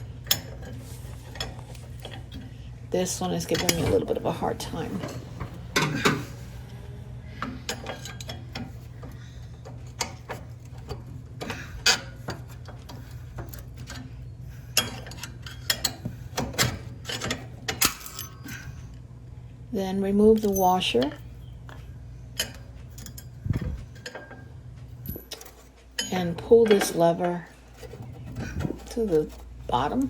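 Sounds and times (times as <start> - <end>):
hand tools clicking on metal: 0.0 - 6.4, 7.4 - 19.0, 20.2 - 24.5.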